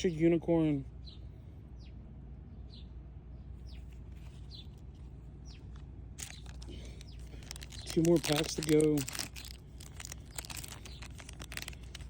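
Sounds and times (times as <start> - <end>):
steady low hum: 0.0 - 12.0
bird chirping: 1.0 - 12.0.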